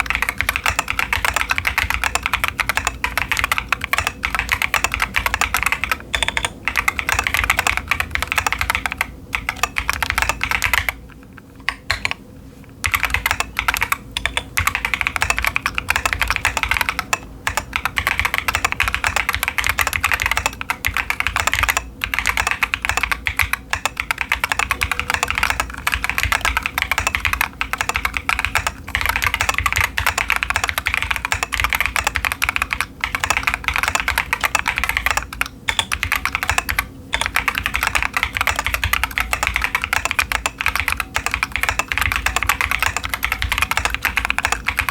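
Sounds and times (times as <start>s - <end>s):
mechanical keyboard typing: 0.0s - 12.2s, 12.8s - 44.9s.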